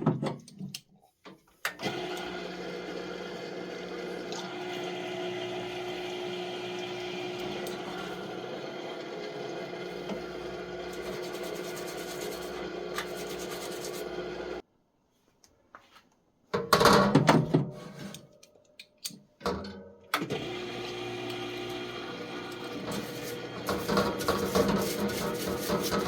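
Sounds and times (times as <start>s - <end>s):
pump humming: 1.8s - 14.6s, 20.3s - 26.0s.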